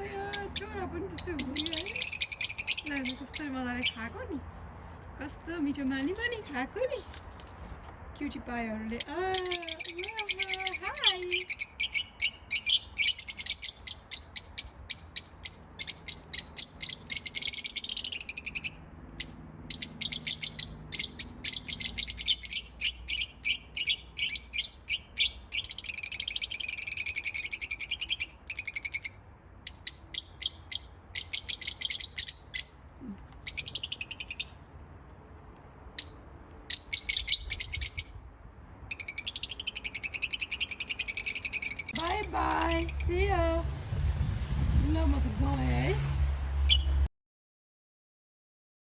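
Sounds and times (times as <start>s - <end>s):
budgies chattering: 0.0s - 4.1s, 9.0s - 29.1s, 38.9s - 43.6s.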